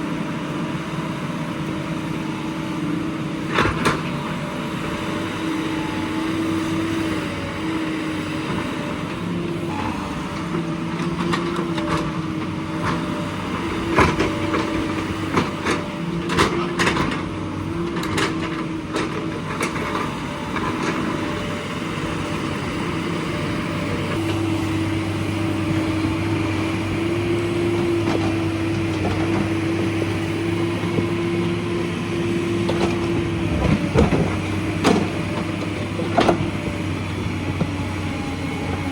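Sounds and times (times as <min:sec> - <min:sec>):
excavator diesel engine running: 0:00.0 - 0:38.9
digging knocks and clanks: 0:17.8 - 0:38.8.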